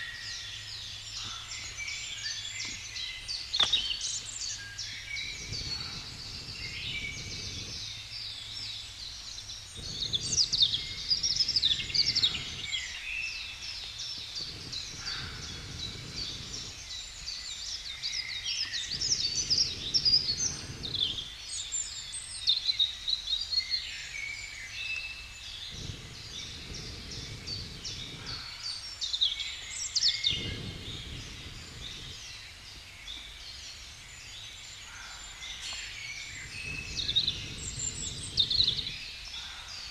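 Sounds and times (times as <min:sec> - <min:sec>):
woodland birds singing: 0:00.0 - 0:39.9
low rumble: 0:04.2 - 0:21.9, 0:25.5 - 0:29.0, 0:29.6 - 0:33.3.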